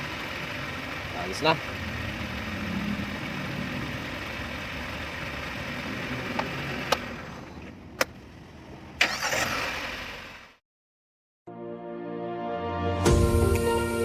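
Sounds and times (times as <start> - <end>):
car engine idling: 0.0 - 10.6.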